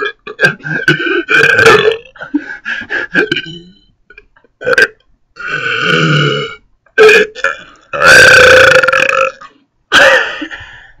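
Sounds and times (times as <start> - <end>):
person burping loudly: 0.0 - 2.3, 3.1 - 3.8, 4.6 - 10.4.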